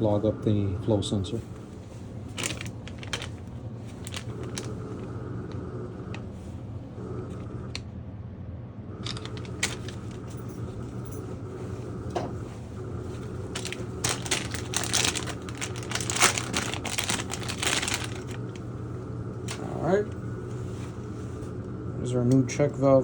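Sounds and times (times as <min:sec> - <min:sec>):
steady low hum: 0:00.0 - 0:23.0
small hard parts clinking: 0:02.3 - 0:03.4, 0:09.0 - 0:11.3, 0:13.5 - 0:18.6.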